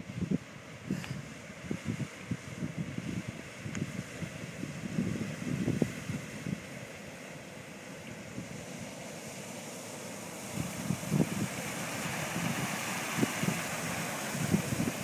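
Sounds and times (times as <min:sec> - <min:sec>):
wind buffeting microphone: 0:00.0 - 0:06.9, 0:10.4 - 0:15.0.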